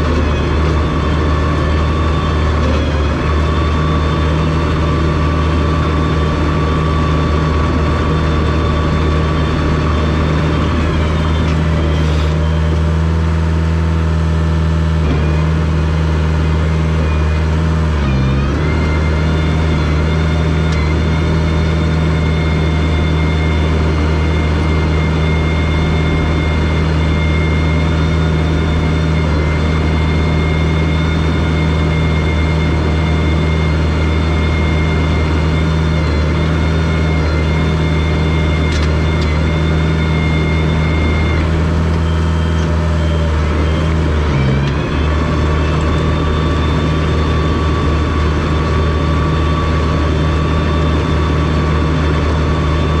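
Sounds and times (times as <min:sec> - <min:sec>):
bulldozer diesel engine running: 0:00.0 - 0:53.0
lower whine: 0:00.0 - 0:53.0
thin high whine: 0:18.5 - 0:53.0.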